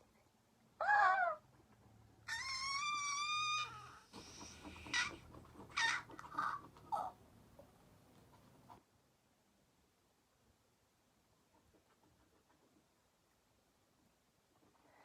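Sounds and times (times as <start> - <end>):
chicken wavering call: 2.3 - 7.1
chickens clucking: 4.1 - 8.8.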